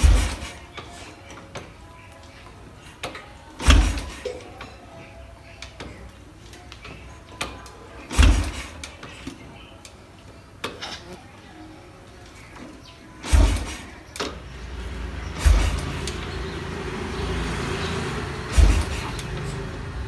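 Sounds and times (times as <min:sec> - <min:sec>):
motorcycle engine kick-start thumps: 0:00.0 - 0:00.7, 0:03.6 - 0:04.3, 0:08.1 - 0:09.0, 0:13.2 - 0:20.0.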